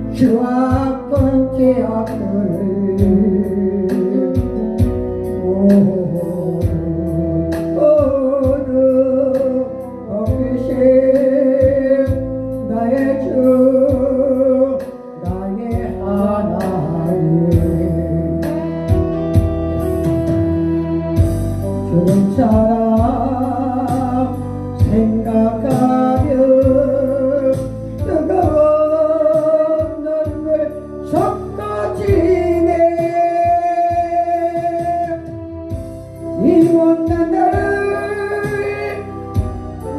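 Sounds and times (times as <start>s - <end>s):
instrumental accompaniment with beat: 0.0s - 39.9s
person singing hymn with vibrato: 21.7s - 35.3s, 36.4s - 39.9s.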